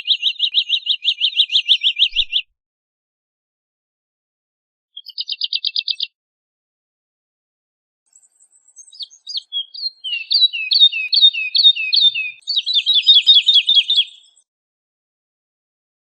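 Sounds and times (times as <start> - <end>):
bird singing whistled notes: 0.0 - 2.5, 5.0 - 6.2, 8.1 - 14.5.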